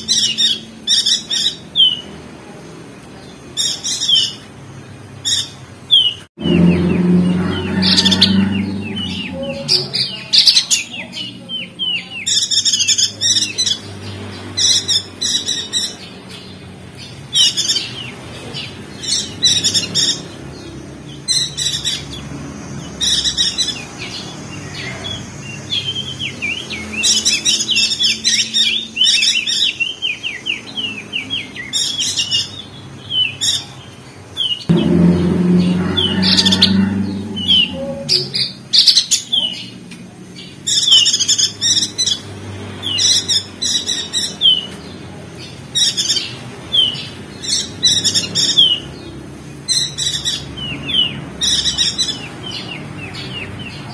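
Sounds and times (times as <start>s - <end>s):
bird twittering chirps: 5.2s - 39.7s
low rumble: 6.4s - 10.2s, 34.7s - 38.6s.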